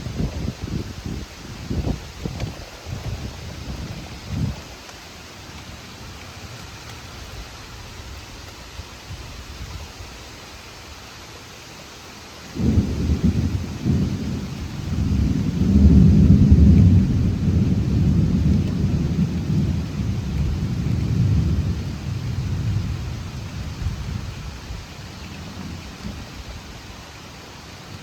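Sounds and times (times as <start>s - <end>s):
thunder crack and rumble: 0.0s - 4.6s, 12.5s - 26.8s
steady rain: 0.0s - 28.0s.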